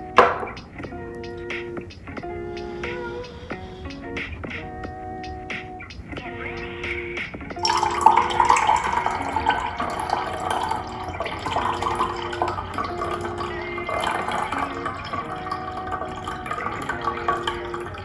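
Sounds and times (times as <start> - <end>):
soft background music: 0.0 - 18.0
liquid pouring: 7.6 - 18.0.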